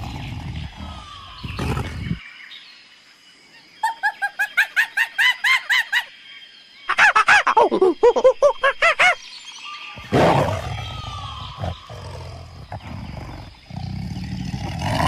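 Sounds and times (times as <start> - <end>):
bird harsh repeated calls: 8.4 - 13.9.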